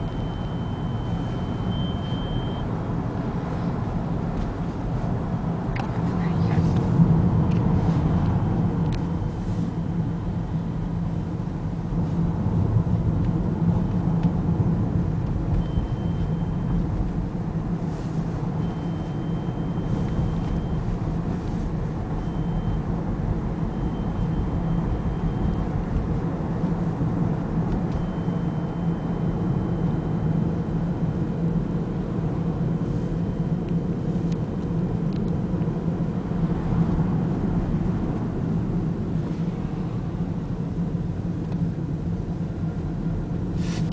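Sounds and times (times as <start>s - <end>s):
car engine rumbling: 0.0s - 43.9s.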